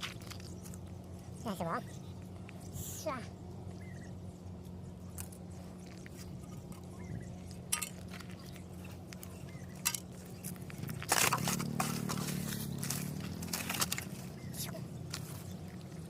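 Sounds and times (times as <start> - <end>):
crunching and scraping: 0.0 - 1.4, 5.1 - 16.0
low steady hum: 0.0 - 16.0.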